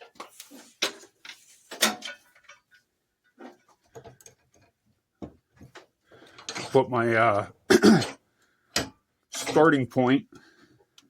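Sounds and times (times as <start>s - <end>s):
knocks and scrapes of wire: 0.0s - 6.8s.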